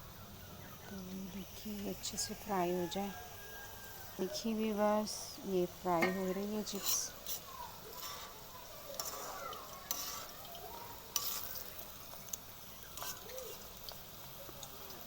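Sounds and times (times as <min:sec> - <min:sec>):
chips frying in hot oil: 0:00.0 - 0:15.0
spoon clicking against pan: 0:06.0 - 0:14.7.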